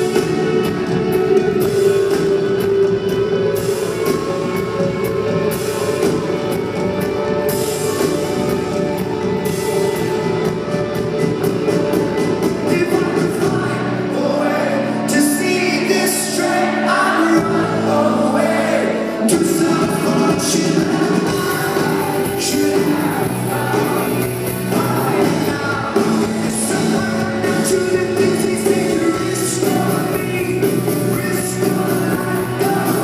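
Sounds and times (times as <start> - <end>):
rock band playing live: 0.0 - 33.0
person singing: 12.1 - 33.0.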